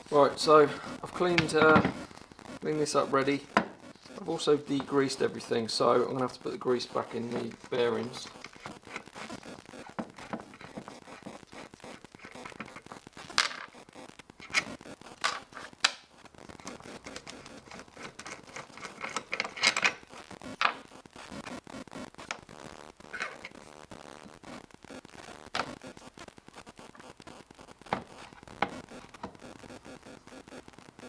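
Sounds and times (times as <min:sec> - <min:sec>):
scraping and clicking handling noises: 0:14.4 - 0:20.0, 0:23.1 - 0:23.6.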